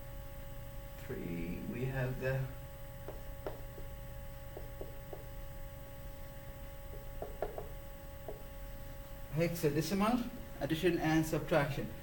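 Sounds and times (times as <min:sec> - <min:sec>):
electrical hum: 0:00.0 - 0:12.0
pen tapping while writing: 0:03.0 - 0:03.9, 0:04.5 - 0:05.3, 0:06.9 - 0:08.4.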